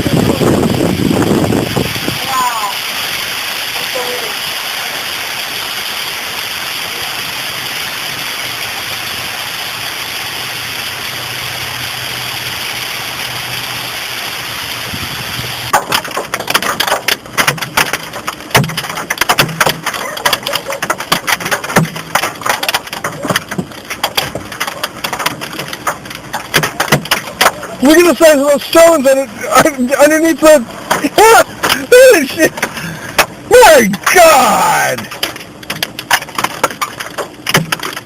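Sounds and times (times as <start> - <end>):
hail and rain pelting a car: 0.0 - 38.0
large hailstones cracking on roof: 15.6 - 38.0.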